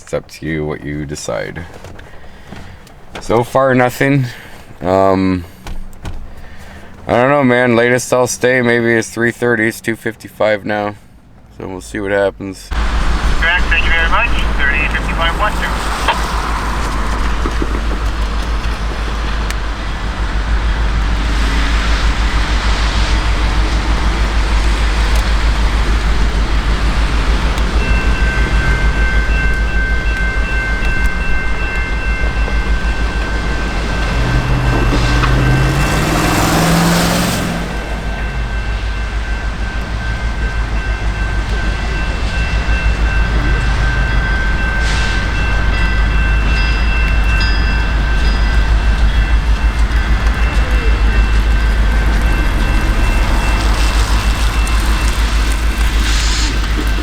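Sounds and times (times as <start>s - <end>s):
train engine: 0.0s - 57.0s
train rumbling past: 0.0s - 57.0s
steel wheels squealing: 12.7s - 57.0s.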